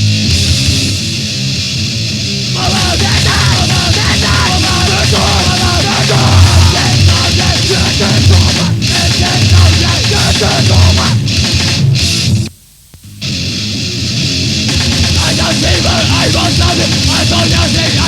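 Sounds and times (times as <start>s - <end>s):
distorted guitar and bass: 0.0s - 18.0s
drums: 0.0s - 18.0s
harsh yelled vocals: 2.6s - 11.4s, 14.7s - 18.0s.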